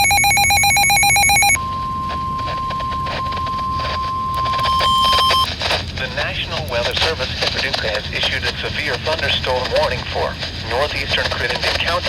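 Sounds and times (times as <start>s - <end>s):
electronic alarm beeping: 0.0s - 5.5s
steady warning tone: 0.0s - 5.5s
radio static crackling: 0.0s - 12.0s.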